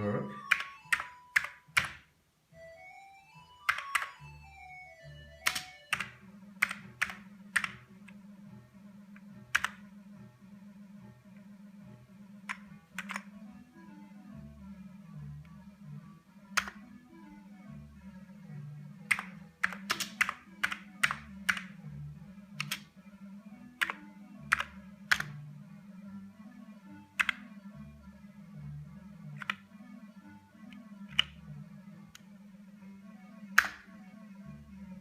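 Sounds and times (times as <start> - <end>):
soft background music: 0.0 - 35.0
keyboard keys clicking: 0.3 - 2.1, 3.5 - 4.4, 5.3 - 8.2, 9.2 - 9.9, 12.4 - 13.4, 16.4 - 16.9, 19.0 - 21.8, 22.5 - 23.0, 23.8 - 25.4, 27.2 - 27.6, 29.4 - 29.7, 30.6 - 31.4, 33.5 - 34.0.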